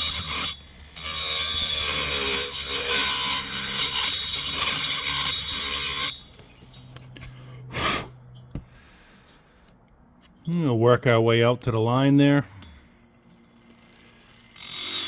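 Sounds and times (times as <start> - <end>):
rotary grinder cutting metal: 0.0 - 6.4, 13.4 - 15.0.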